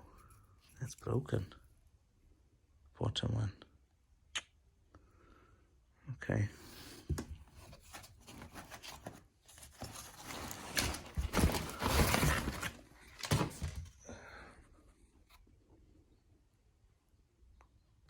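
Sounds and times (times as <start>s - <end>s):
scraping: 6.8s - 13.9s
rustling packing: 7.1s - 14.0s.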